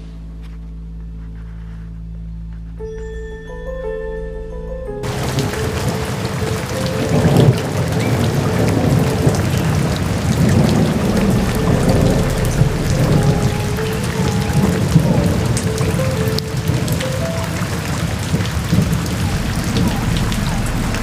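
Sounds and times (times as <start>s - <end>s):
faint music with held notes: 0.0s - 21.0s
low thunder rumbling: 4.1s - 21.0s
heavy rain: 5.0s - 21.0s.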